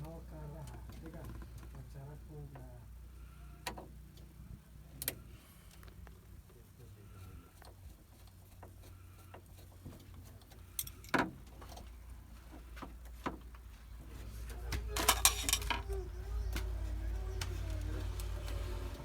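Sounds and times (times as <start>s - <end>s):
tools clicking and rattling: 14.9s - 16.0s.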